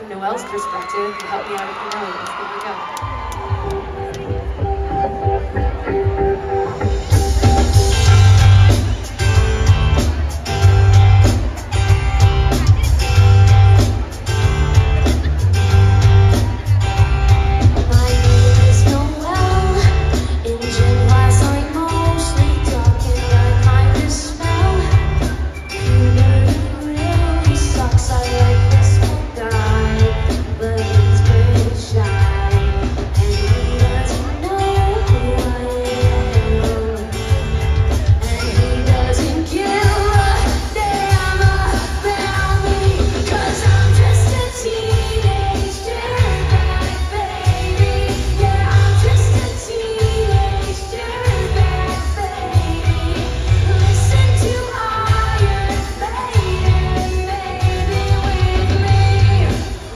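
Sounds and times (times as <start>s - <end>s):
live pop-rock band: 0.0s - 59.9s
steady drum beat: 3.0s - 59.9s
heavy bass: 3.4s - 59.9s
woman singing: 17.8s - 59.9s.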